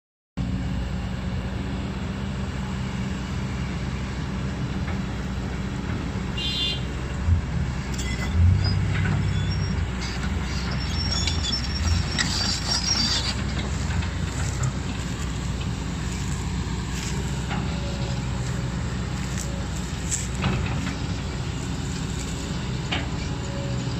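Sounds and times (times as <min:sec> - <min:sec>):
excavator diesel engine running: 0:00.4 - 0:23.9
high metallic squeals: 0:07.9 - 0:14.6.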